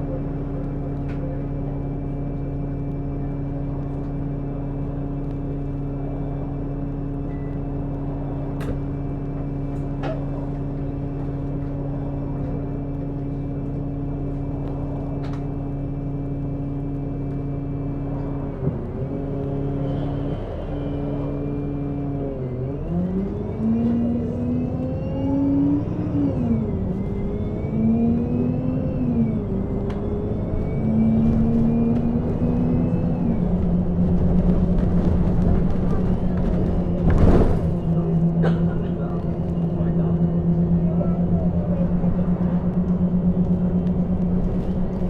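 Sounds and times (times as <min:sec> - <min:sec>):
bus engine idling and accelerating: 0:00.0 - 0:45.0.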